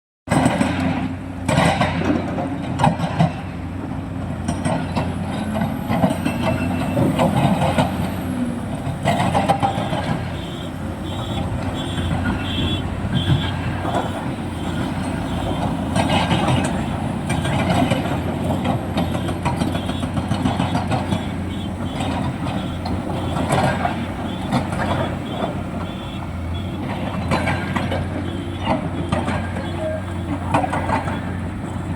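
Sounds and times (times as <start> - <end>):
excavator diesel engine: 0.3 - 31.9
clanks and knocks: 8.8 - 31.9.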